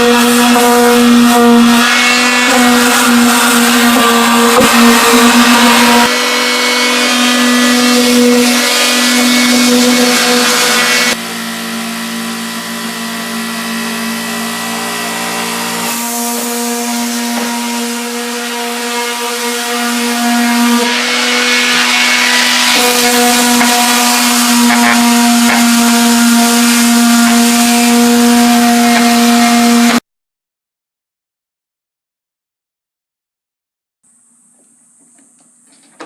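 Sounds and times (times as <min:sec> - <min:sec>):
electric sander humming and hissing: 0:00.0 - 0:30.0.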